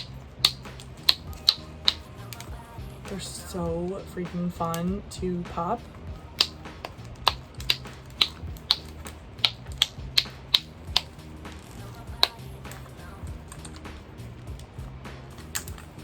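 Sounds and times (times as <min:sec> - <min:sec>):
fidget toy bubbles popping: 0:00.0 - 0:02.0, 0:06.4 - 0:11.1
background music: 0:00.0 - 0:16.0.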